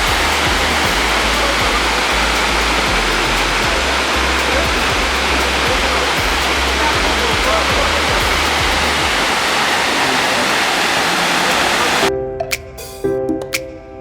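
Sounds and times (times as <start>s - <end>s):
waterfall rushing: 0.0s - 12.1s
background music: 0.0s - 14.0s.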